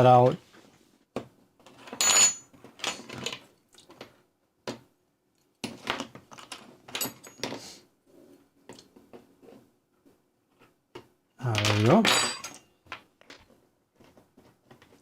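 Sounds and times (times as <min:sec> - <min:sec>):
plastic parts clicking and scraping: 0:05.6 - 0:06.7, 0:12.8 - 0:15.0.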